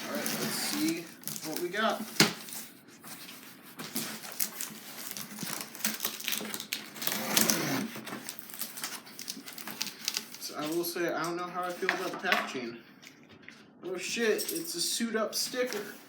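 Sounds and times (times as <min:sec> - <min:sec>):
cardboard box being opened: 0:00.0 - 0:10.4
cardboard and packaging rustling: 0:00.0 - 0:12.4, 0:15.4 - 0:16.0.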